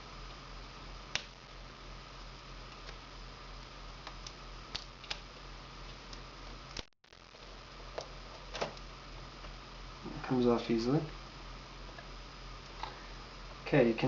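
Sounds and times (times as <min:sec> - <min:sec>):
low hum and hiss: 0:00.0 - 0:14.0.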